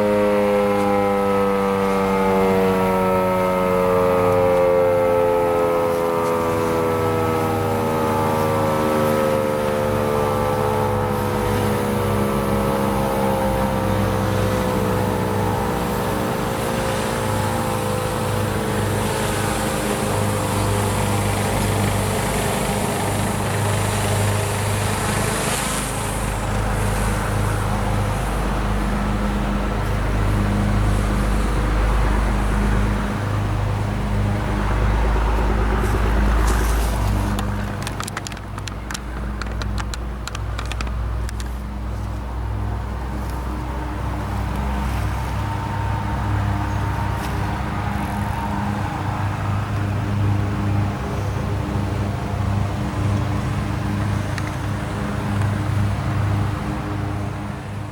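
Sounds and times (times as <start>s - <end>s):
siren winding down: 0.0s - 31.6s
sharp crackles: 35.8s - 42.2s.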